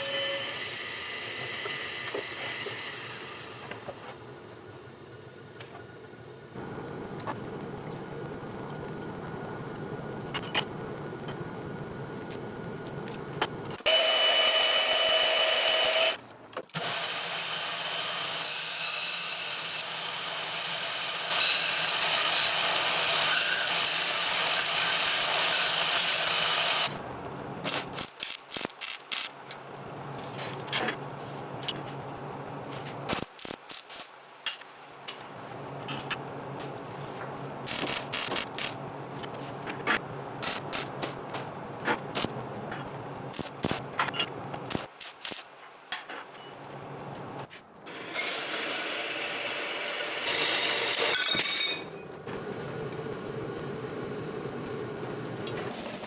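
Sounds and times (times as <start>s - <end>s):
loud grinding noise: 47.9s - 51.2s.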